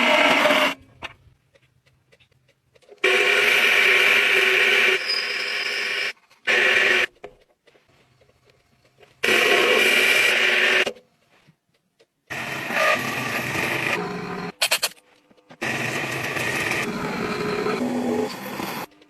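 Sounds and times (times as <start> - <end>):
metal lathe whining: 0.0 - 0.8, 3.0 - 7.1, 9.2 - 10.9, 12.3 - 14.5, 15.6 - 18.9.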